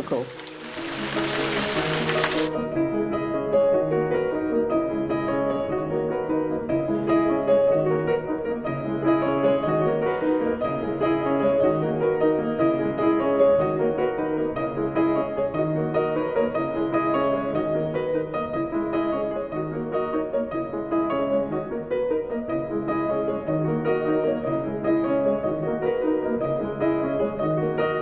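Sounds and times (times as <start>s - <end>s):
piano playing: 0.0s - 3.8s.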